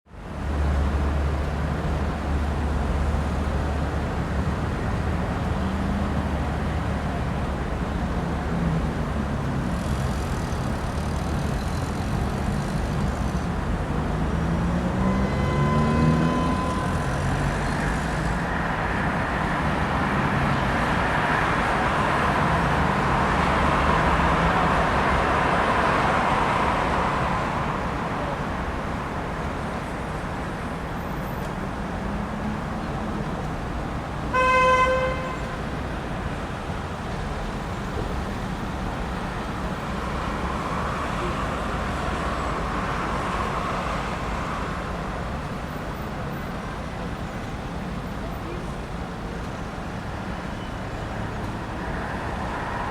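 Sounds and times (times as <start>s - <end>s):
vehicles passing: 0.1s - 52.9s
car horn toot: 15.0s - 17.2s, 34.3s - 35.6s.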